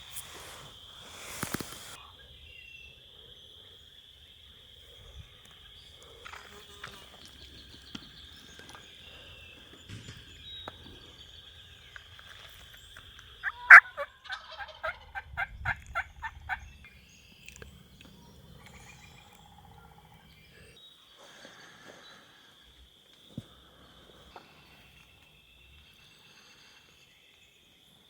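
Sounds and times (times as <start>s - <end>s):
wild turkey calling: 13.4s - 16.7s.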